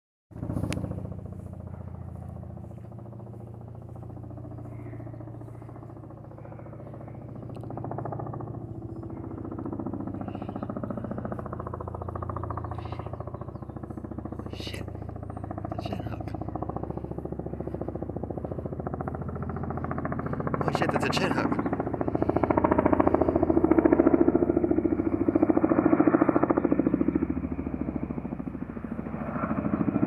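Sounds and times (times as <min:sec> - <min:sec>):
helicopter rotor blades beating: 0:00.3 - 0:30.0
low engine drone: 0:00.3 - 0:30.0.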